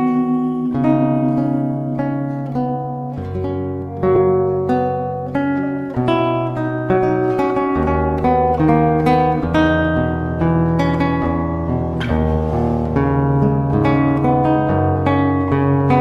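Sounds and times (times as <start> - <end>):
person singing: 0.0 - 3.2
acoustic guitar strumming: 0.0 - 16.0.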